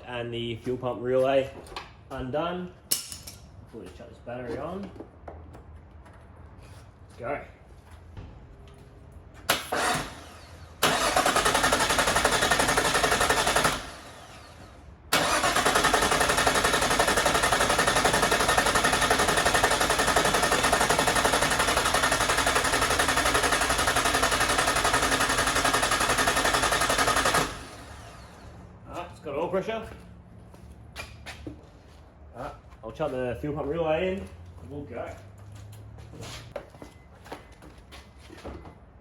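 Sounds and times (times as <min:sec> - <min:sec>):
engine cranking on starter motor: 0:09.5 - 0:28.6.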